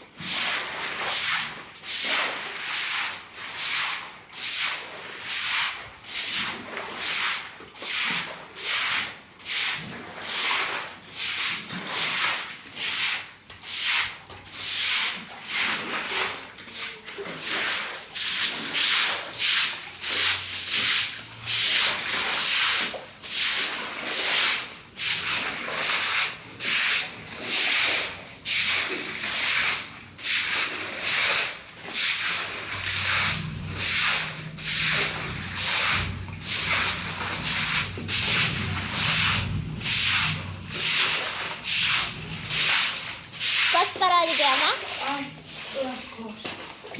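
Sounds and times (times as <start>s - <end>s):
rhythmic sweeping strokes: 31.1s - 45.3s
faint low hum: 32.4s - 43.5s.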